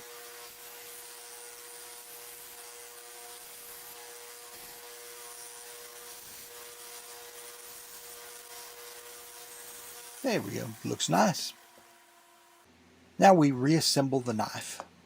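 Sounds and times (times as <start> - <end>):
small electric motor humming: 0.0 - 12.7.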